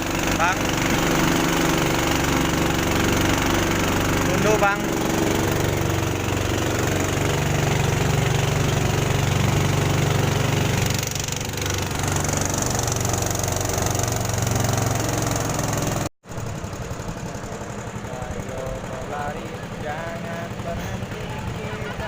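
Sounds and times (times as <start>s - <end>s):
vehicle engine running: 0.0s - 22.0s.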